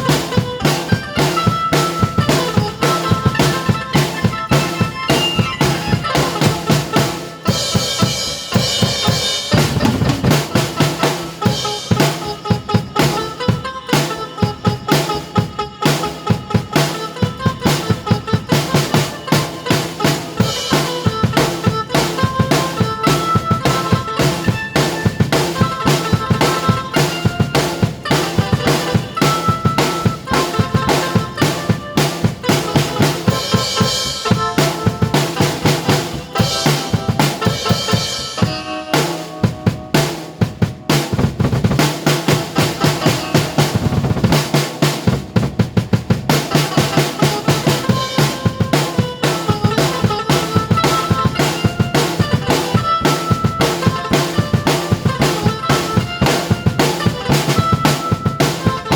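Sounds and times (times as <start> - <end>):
drum kit playing: 0.0 - 58.9
keyboard melody: 0.0 - 58.9.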